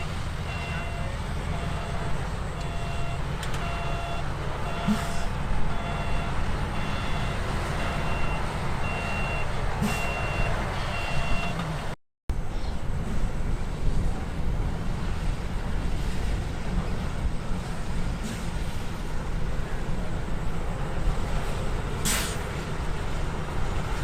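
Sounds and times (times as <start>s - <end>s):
reversing alarm beeping: 0.0s - 11.6s
diesel engine rumble: 0.0s - 24.0s.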